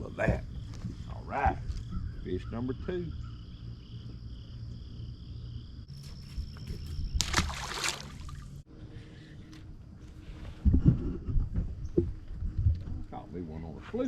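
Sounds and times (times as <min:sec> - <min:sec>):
insect drone: 0:00.0 - 0:09.9.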